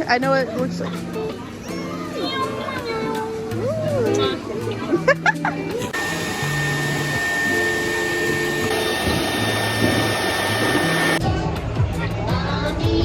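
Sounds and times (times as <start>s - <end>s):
electric blower motor whining: 5.8s - 11.2s.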